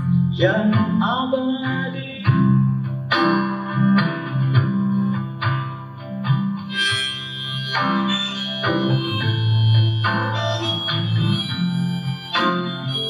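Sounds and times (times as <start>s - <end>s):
strummed acoustic guitar: 0.0s - 13.0s
held melody line: 4.0s - 13.0s.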